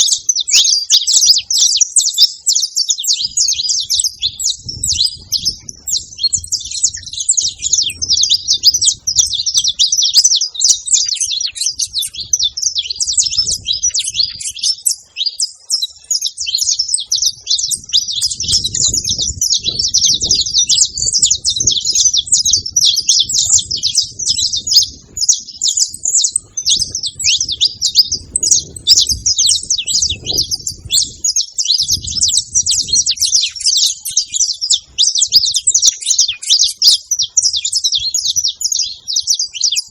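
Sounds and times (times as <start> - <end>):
finches chirping and singing: 0.0 - 39.9.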